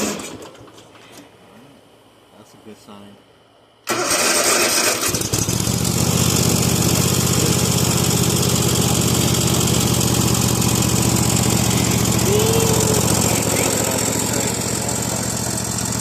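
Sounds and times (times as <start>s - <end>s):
mower engine running: 3.9s - 16.0s.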